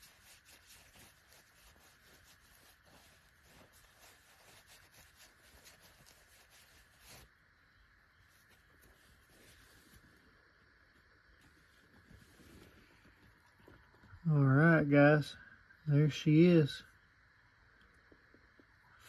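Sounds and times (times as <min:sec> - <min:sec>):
cloth rubbing a pocket knife: 0:00.0 - 0:07.4, 0:08.2 - 0:10.3.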